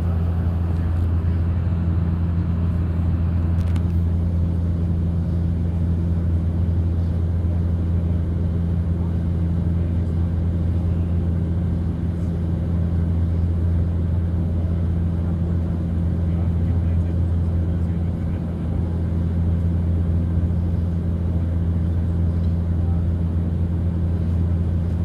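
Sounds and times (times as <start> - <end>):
higher propeller hum: 0.0 - 25.0
low propeller hum: 0.0 - 25.0.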